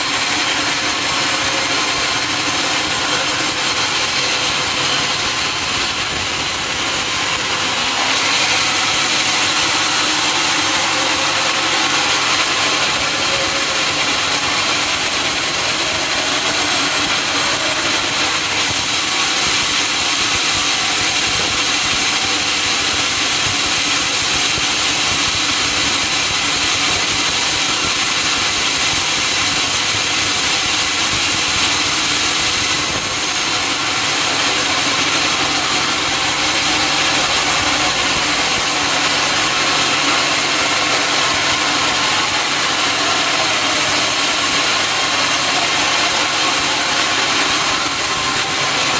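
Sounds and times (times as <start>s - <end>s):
sawmill saw cutting log: 0.0s - 48.9s.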